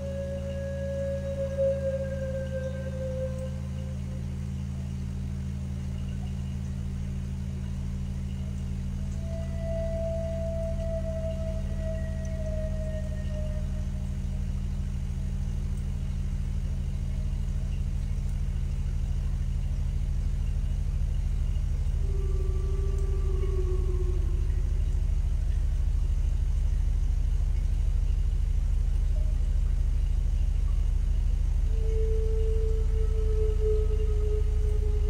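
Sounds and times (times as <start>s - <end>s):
low rumbling drone: 0.0s - 35.0s
faint eerie sliding tone: 21.9s - 25.6s, 31.7s - 35.0s.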